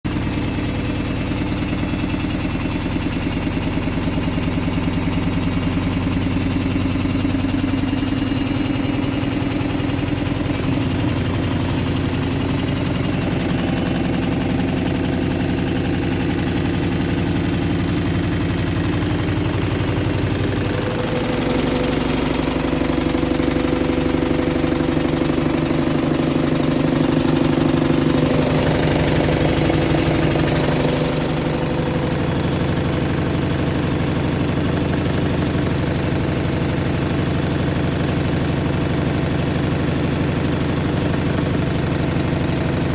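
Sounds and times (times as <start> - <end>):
washing machine motor drone: 0.1 - 42.9
fast even rattle: 1.6 - 36.8.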